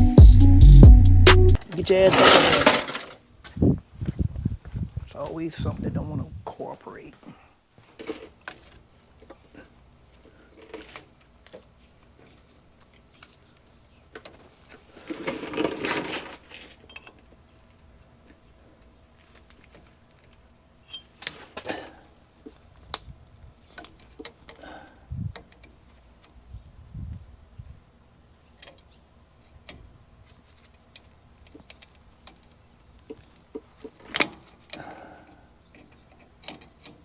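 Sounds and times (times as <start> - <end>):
hand tools clinking: 1.6 - 3.2
metal rattling scrape: 1.9 - 3.2.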